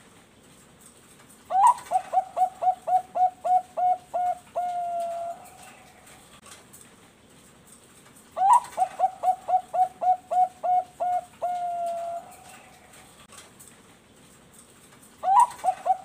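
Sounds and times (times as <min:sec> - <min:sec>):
dove cooing song: 0:01.5 - 0:06.4, 0:08.4 - 0:13.2, 0:15.2 - 0:16.0.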